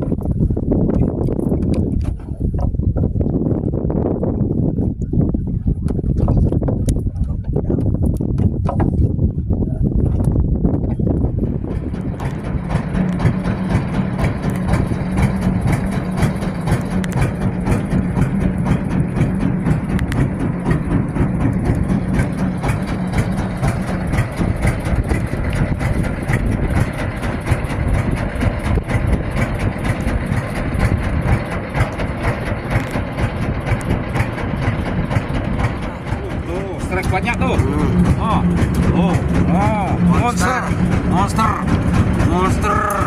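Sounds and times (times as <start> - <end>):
boat engine running: 0.0 - 43.0.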